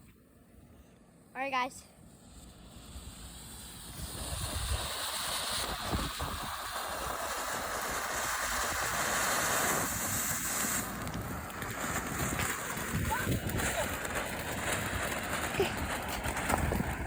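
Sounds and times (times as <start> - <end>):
firework hissing: 1.6 - 17.0
wind on microphone: 3.8 - 17.0.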